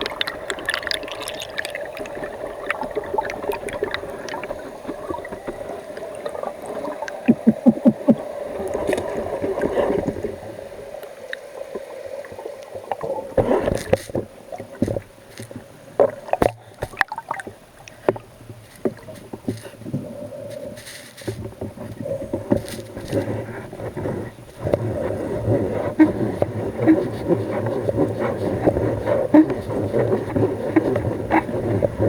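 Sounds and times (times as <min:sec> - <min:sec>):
water noise: 0:00.0 - 0:32.0.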